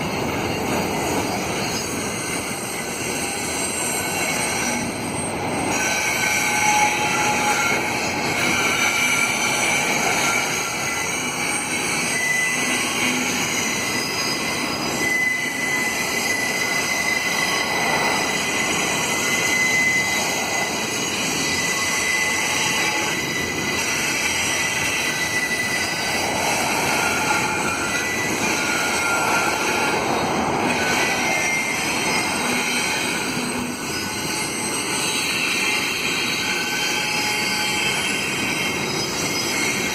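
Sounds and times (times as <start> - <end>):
rumble of passing train cars: 0.0 - 39.9
train wheels squealing on rails: 0.0 - 39.9.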